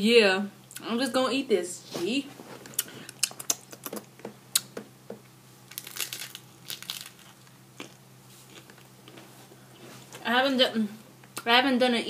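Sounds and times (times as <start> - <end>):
fried tortillas crunching: 5.6 - 10.2.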